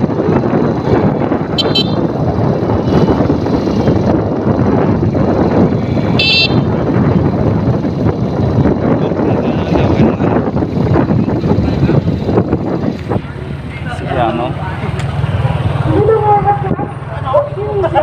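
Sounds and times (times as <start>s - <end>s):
engine and traffic rumble: 0.0s - 18.0s.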